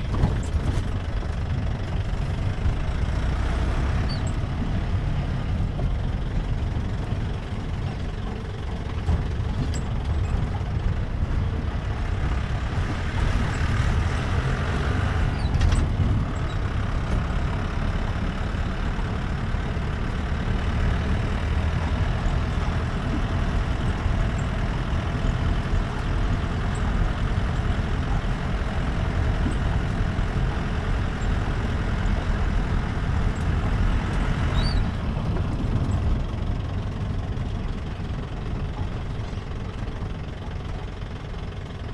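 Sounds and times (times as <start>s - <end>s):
car engine rumbling: 0.0s - 41.9s
road noise: 0.0s - 41.9s.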